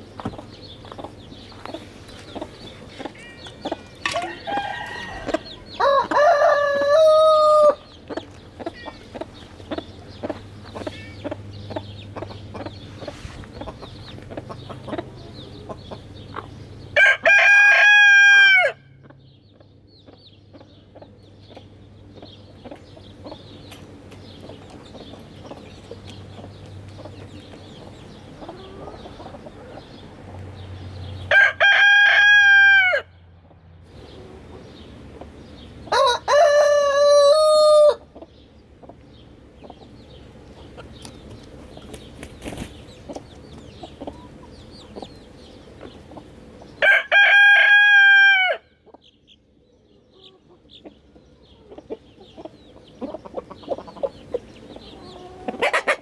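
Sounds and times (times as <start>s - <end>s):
chickens clucking: 0.0s - 56.0s
rooster crowing: 3.3s - 8.0s, 17.0s - 18.9s, 31.3s - 33.2s, 35.9s - 38.0s, 46.8s - 48.7s.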